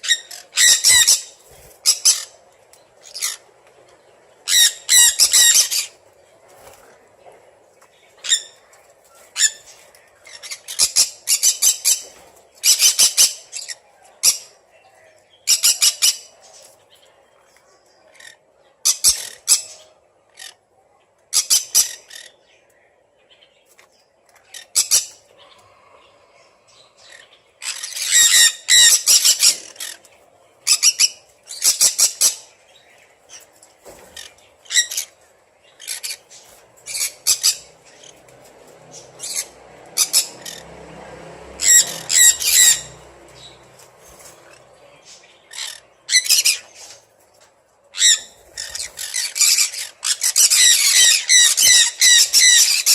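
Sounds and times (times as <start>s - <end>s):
parrots squawking harshly: 0.0s - 2.4s, 4.5s - 5.9s, 18.2s - 20.6s, 21.4s - 22.3s, 27.1s - 30.0s, 30.7s - 32.5s, 34.1s - 35.1s, 36.9s - 38.2s, 39.2s - 40.7s, 41.6s - 43.0s, 45.5s - 47.0s, 48.0s - 52.9s.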